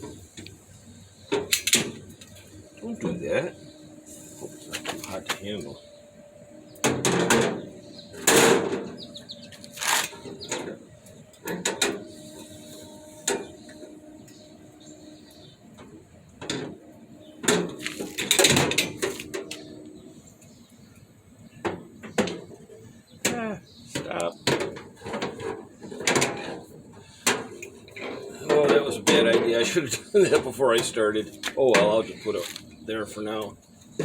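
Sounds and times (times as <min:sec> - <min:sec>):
metal clanks and scrapes: 0:06.8 - 0:14.4, 0:15.2 - 0:16.8, 0:17.4 - 0:19.8, 0:24.0 - 0:32.7.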